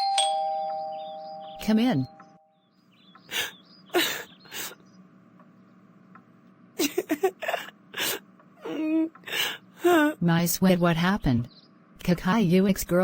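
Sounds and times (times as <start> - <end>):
girl sobbing and gasping: 3.3 - 4.8, 7.3 - 10.2.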